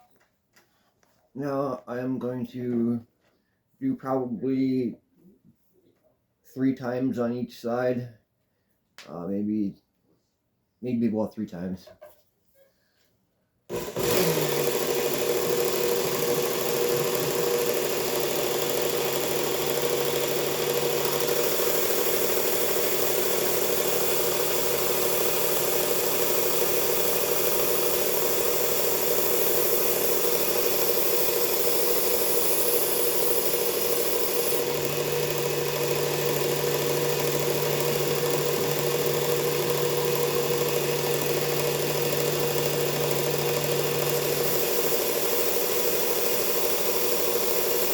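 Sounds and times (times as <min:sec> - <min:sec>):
belt sharpener running: 0:13.7 - 0:47.9.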